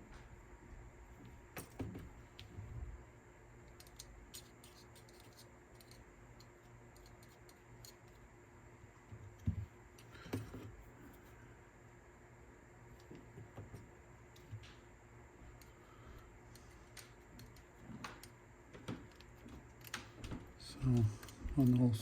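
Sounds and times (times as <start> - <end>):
small parts and tools clicking: 3.6 - 8.3, 15.5 - 22.0.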